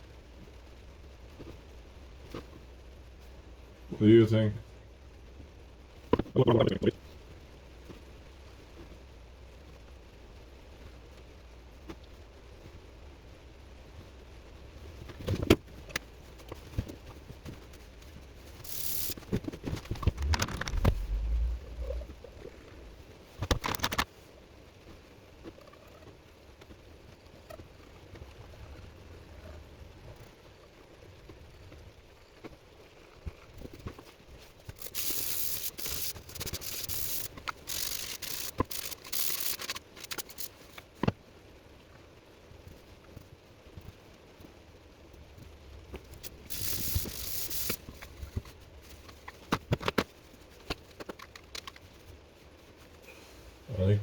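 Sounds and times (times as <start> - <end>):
rough rubbing or scraping strokes: 18.6 - 23.0, 34.7 - 40.7, 46.2 - 47.9
short hiss: 18.6 - 23.0, 34.7 - 40.8, 46.2 - 48.1
low rumble: 19.8 - 23.2.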